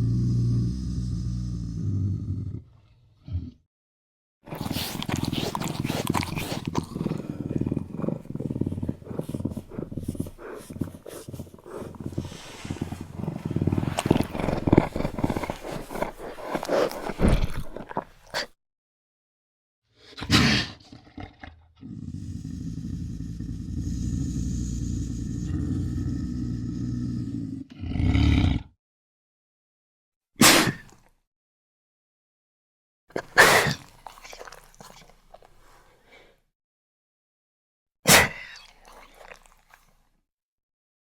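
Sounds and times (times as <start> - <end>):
lynx growling: 0.0 - 3.6, 4.5 - 18.5, 20.6 - 28.7.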